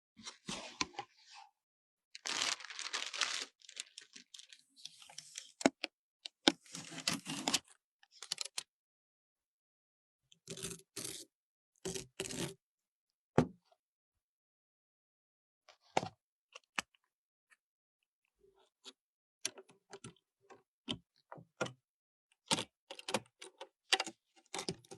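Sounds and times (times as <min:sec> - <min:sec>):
packaging tearing and crinkling: 0:02.2 - 0:04.6.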